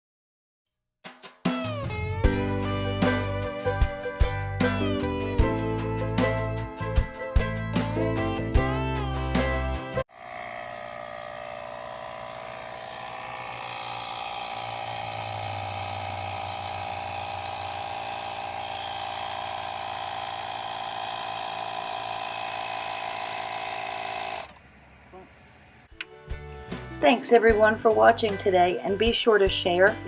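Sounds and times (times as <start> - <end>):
air compressor humming: 10.1 - 26.0.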